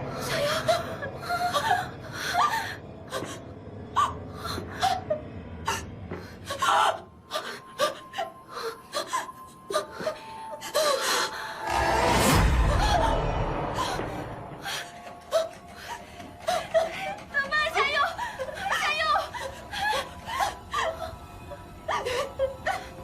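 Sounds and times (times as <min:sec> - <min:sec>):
faint low rumble: 0:11.6 - 0:15.0.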